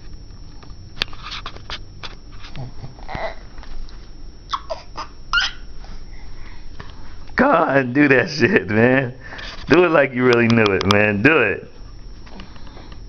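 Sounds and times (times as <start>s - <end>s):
baby cooing and squeaking: 3.0s - 3.4s, 4.5s - 5.7s.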